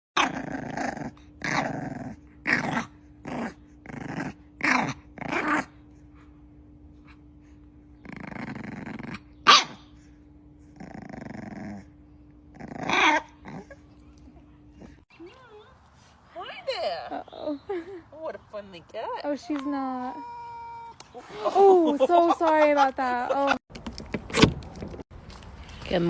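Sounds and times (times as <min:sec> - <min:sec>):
dog growling: 0:00.2 - 0:05.8, 0:08.0 - 0:10.0, 0:10.7 - 0:13.9
dog yelping: 0:09.4 - 0:09.9, 0:12.8 - 0:13.8, 0:19.5 - 0:21.1.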